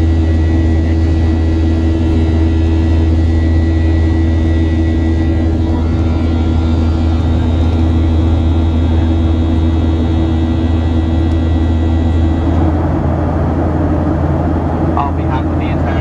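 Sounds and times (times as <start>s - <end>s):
airliner cabin hum: 0.0s - 16.0s
faint high whine: 0.1s - 12.6s.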